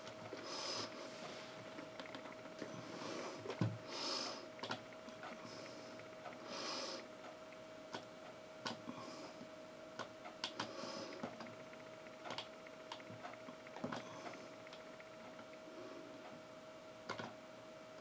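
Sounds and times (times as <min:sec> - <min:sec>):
faint electrical hum: 0:00.0 - 0:18.0
soft breaths: 0:00.2 - 0:01.9, 0:02.6 - 0:04.6, 0:05.2 - 0:07.2, 0:08.8 - 0:09.6, 0:10.5 - 0:11.4, 0:15.5 - 0:16.4
small clicks and taps: 0:12.2 - 0:15.6.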